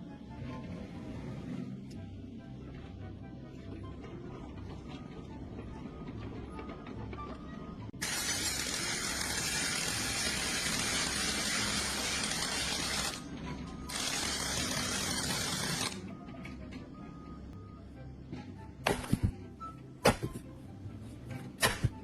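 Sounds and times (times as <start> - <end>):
high-pressure spray hissing: 8.0 - 13.2.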